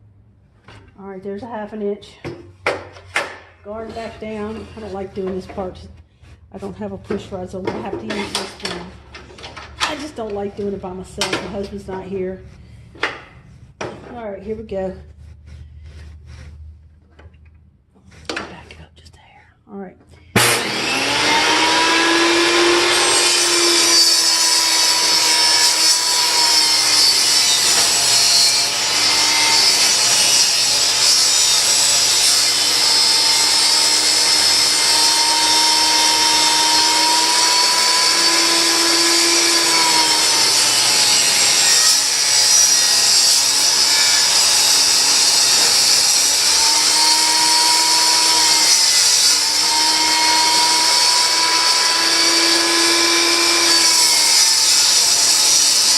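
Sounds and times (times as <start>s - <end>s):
table saw ripping wood: 20.4s - 55.9s.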